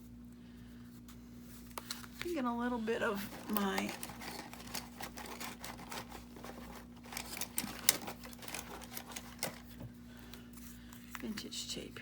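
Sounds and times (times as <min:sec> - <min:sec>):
craft supplies clicking and tapping: 0:03.4 - 0:09.8.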